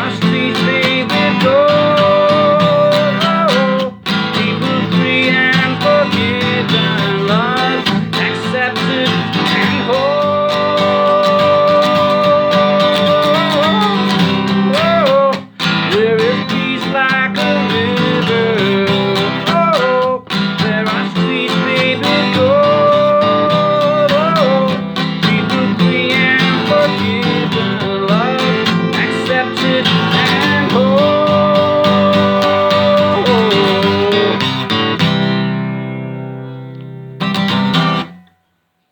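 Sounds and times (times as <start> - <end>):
electric guitar lead melody: 22.0 - 38.5.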